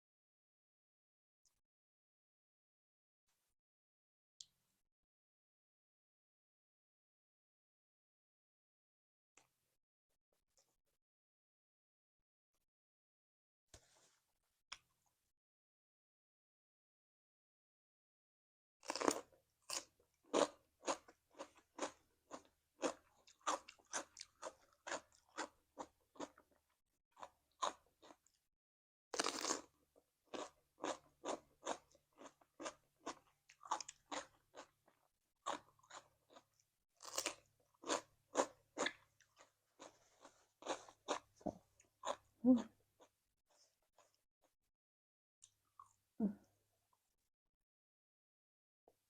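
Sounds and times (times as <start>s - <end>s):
person chewing crunchy food: 18.8s - 26.6s, 27.2s - 28.3s, 29.2s - 42.4s.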